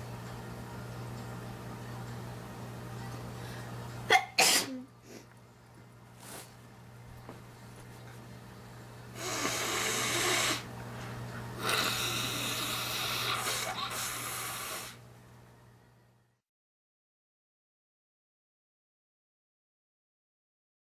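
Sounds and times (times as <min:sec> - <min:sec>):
low electrical hum: 0:00.0 - 0:16.5.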